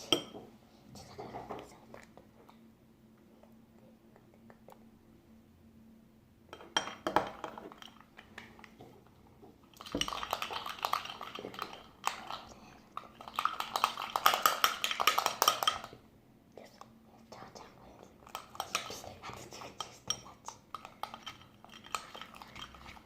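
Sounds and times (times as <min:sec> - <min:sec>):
utensil scraping a bowl: 0:18.2 - 0:23.0.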